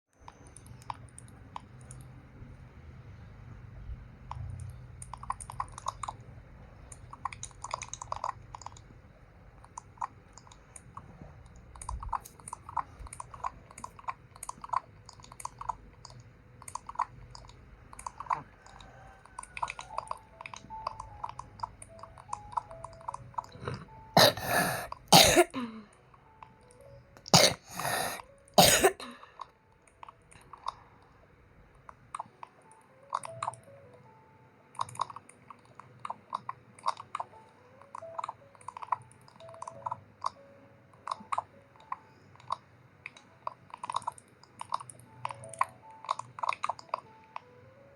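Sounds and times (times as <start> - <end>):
person chewing: 22.2 - 25.0
person coughing: 24.2 - 25.8, 27.3 - 29.2.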